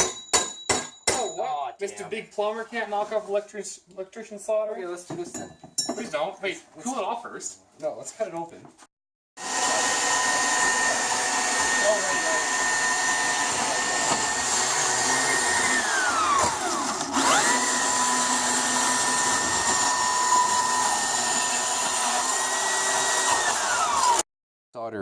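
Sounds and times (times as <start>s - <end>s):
power tool cutting copper pipe: 9.4s - 24.2s.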